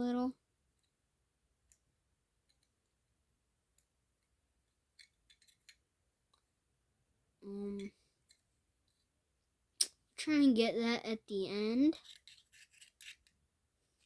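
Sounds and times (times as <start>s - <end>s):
small metal clicks and taps: 5.0s - 6.4s
person humming: 7.4s - 8.0s.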